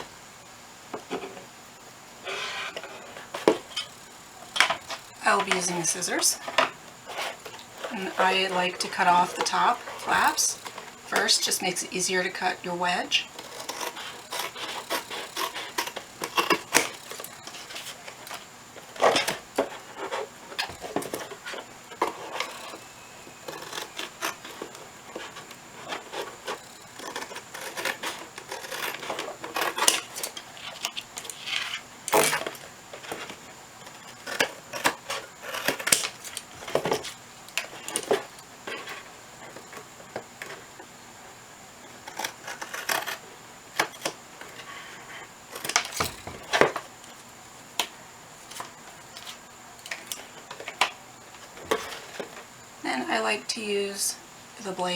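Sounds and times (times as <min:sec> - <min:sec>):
scissors snipping cardboard: 0:13.4 - 0:18.4, 0:23.4 - 0:33.2, 0:34.2 - 0:38.3.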